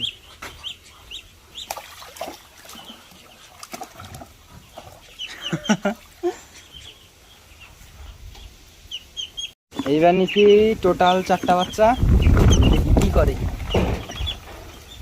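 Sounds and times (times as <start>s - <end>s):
duckling peeping: 0.0s - 1.9s, 4.5s - 5.9s, 6.5s - 13.1s, 13.7s - 15.0s
adult ducks calling: 0.0s - 15.0s.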